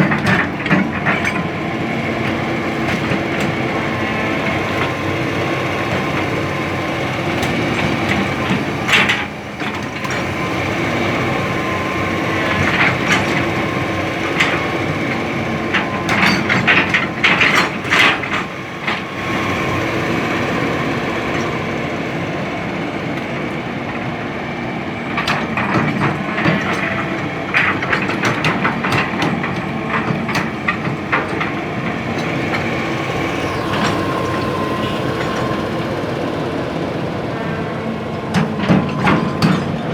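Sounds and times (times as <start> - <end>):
metallic clanking and scraping: 0.0 - 1.6, 11.2 - 22.2, 25.2 - 35.7
excavator diesel engine running: 0.0 - 39.9.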